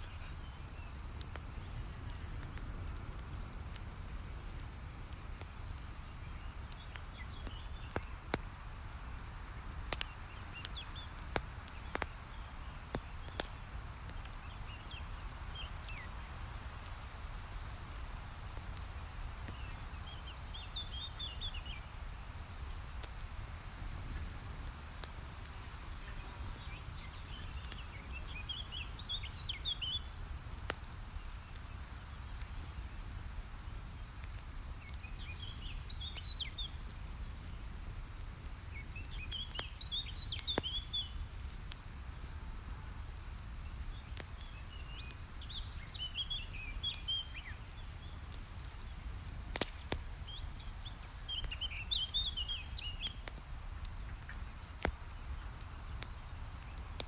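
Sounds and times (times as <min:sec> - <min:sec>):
campfire crackling: 0:00.0 - 0:57.0
low outdoor noise: 0:00.0 - 0:57.0
songbird twittering: 0:50.3 - 0:53.2.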